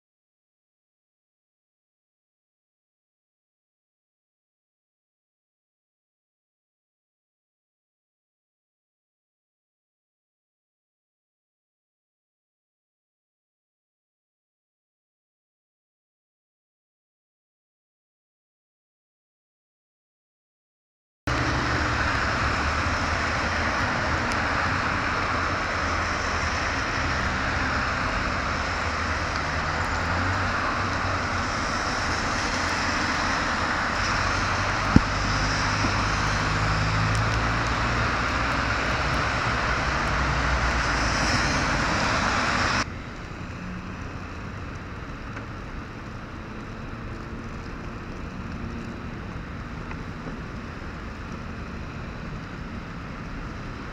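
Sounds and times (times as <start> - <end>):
road traffic: 21.3 - 53.9
street ambience: 21.3 - 53.9.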